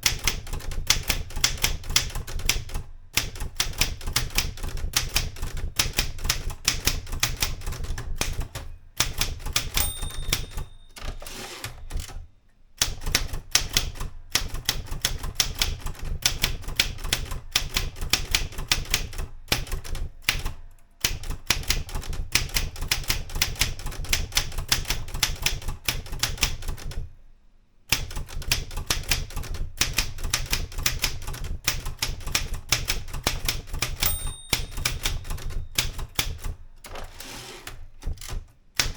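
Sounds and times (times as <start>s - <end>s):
typewriter typing: 0.0s - 12.2s, 12.8s - 27.0s, 27.9s - 38.9s
typewriter margin bell ring: 9.6s - 12.0s, 33.9s - 36.0s.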